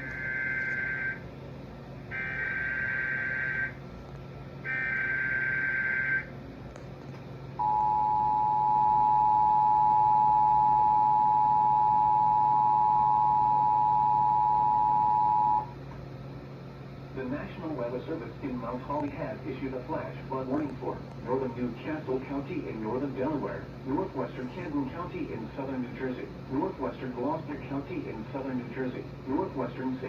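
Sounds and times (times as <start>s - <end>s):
loud dual-tone attention signal: 0.0s - 1.2s, 4.7s - 6.3s, 7.6s - 15.7s.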